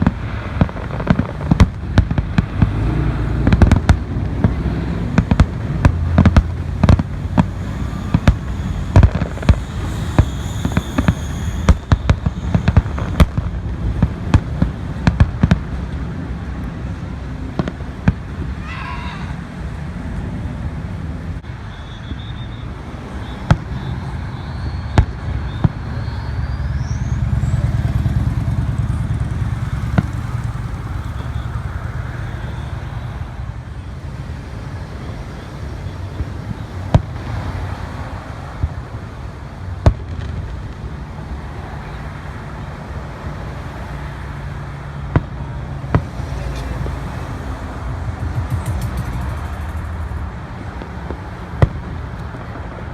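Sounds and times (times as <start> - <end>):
firework bangs: 0.0 - 19.3, 21.5 - 33.3, 36.1 - 42.3, 45.0 - 52.9
rising firework whistle: 6.2 - 15.6, 21.4 - 33.5, 46.8 - 52.3
low rumble: 46.9 - 50.4.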